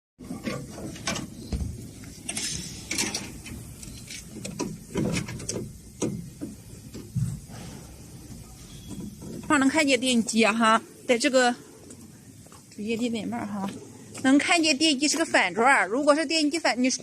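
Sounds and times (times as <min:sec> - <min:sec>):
mechanical clanks and knocks: 0:00.2 - 0:07.5.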